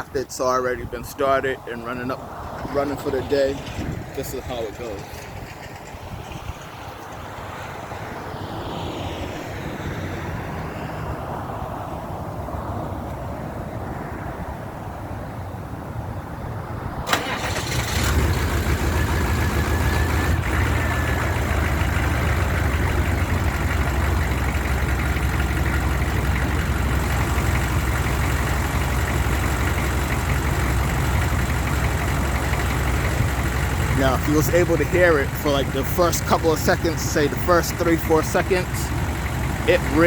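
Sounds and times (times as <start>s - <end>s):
diesel engine starting and idling: 0.0s - 8.2s, 17.0s - 40.0s.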